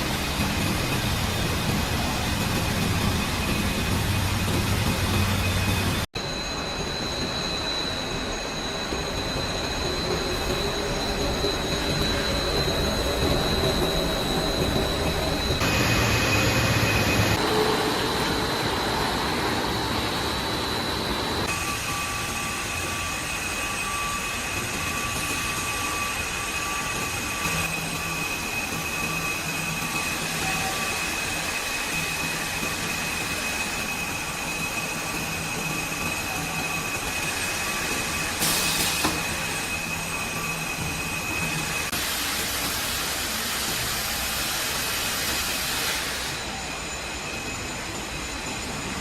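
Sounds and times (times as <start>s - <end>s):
high steady machine whine: 0.0s - 49.0s
production-line machinery running: 0.0s - 49.0s.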